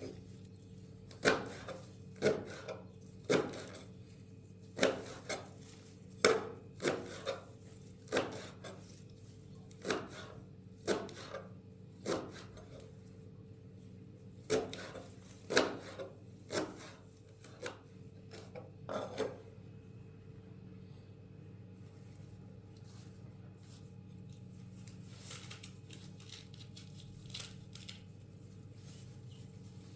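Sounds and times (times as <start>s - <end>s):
knife chopping vegetables: 1.1s - 3.9s, 4.7s - 13.0s, 14.4s - 19.5s.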